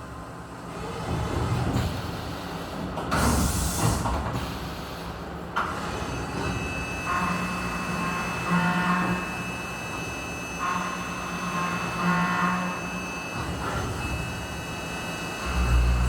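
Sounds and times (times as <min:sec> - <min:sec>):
machine spindle running: 0:07.3 - 0:16.0.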